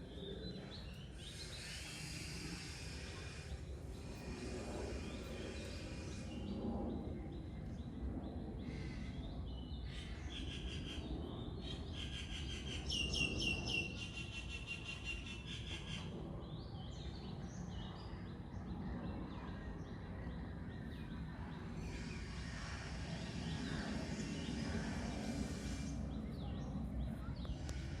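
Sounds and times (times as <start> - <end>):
low outdoor rumble: 0.0 - 12.4, 16.0 - 28.0
hiss: 1.3 - 6.3, 21.9 - 26.0.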